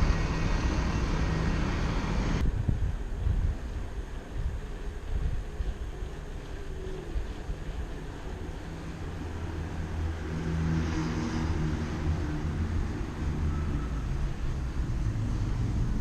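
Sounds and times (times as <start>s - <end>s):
rush of passing vehicle: 0.0s - 2.8s, 8.0s - 16.0s
vehicle engine humming: 0.0s - 16.0s.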